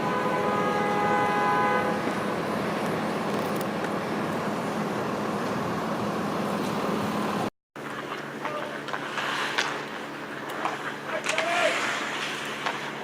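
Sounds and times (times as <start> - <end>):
train horn chord: 0.0 - 2.0.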